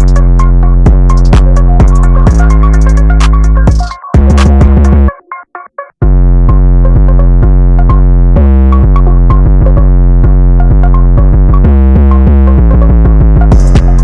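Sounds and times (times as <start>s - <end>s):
drum machine hi-hat ticks: 0.0s - 5.1s, 8.7s - 14.0s
sliding bass notes: 0.0s - 5.1s, 6.0s - 14.0s
repeating synth melody: 0.0s - 5.9s, 6.5s - 14.0s.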